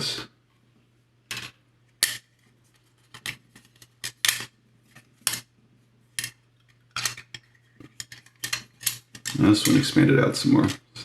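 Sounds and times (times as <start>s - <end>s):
metal wire clicking and scraping: 6.2s - 9.8s.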